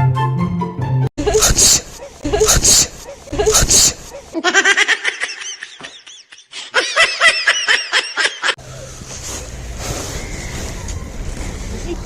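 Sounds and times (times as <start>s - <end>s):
high-pitched laughter: 1.2s - 8.6s
outdoor background noise: 6.8s - 12.0s.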